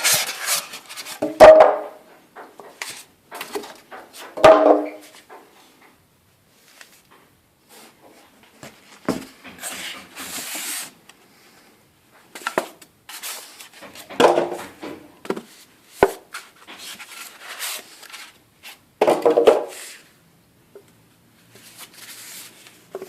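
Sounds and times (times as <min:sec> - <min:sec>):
packaging rustling and scraping: 0:00.0 - 0:01.2, 0:07.7 - 0:11.0, 0:12.3 - 0:18.8, 0:21.5 - 0:23.0.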